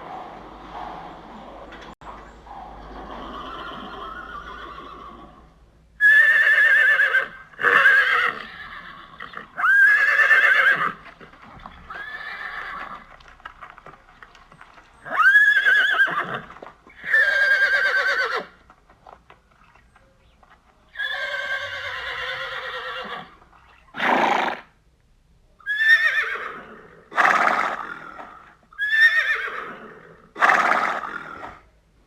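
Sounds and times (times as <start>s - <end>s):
horse neighing: 0.0s - 13.3s, 15.0s - 18.7s, 20.9s - 24.7s, 25.7s - 31.6s.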